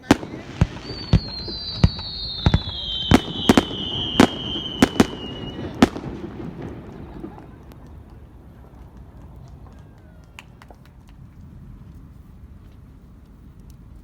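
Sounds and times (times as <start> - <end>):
firework whistle falling: 0.0 - 7.6
fireworks cracking: 0.0 - 9.8.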